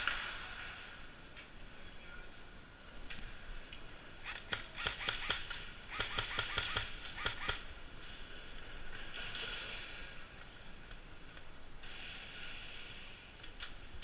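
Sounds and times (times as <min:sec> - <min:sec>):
airsoft guns firing: 0:04.2 - 0:07.8.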